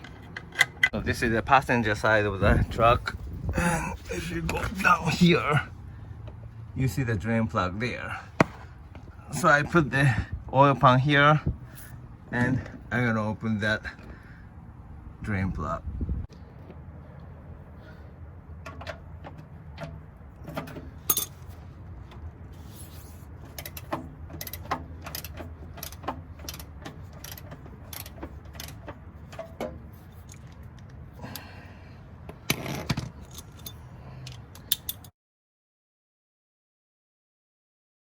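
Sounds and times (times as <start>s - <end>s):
socket wrench ratcheting: 23.5s - 29.6s, 32.4s - 35.1s.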